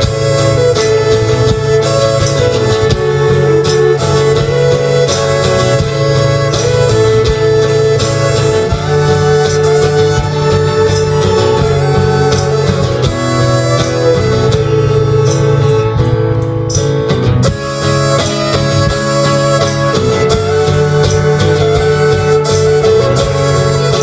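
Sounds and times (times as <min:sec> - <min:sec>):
live country band playing: 0:00.0 - 0:24.0
strummed acoustic strings: 0:00.0 - 0:24.0.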